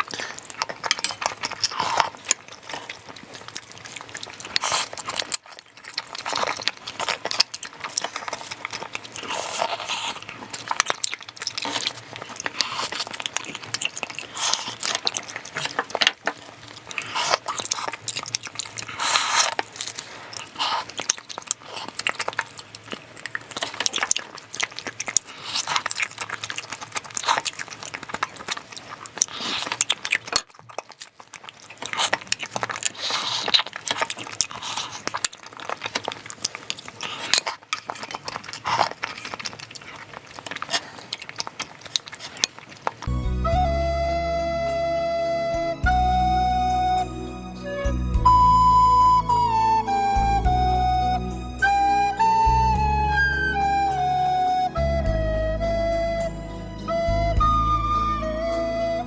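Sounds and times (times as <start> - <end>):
person chewing food: 0.0 - 43.1
wet smacks and crunches: 0.0 - 43.1.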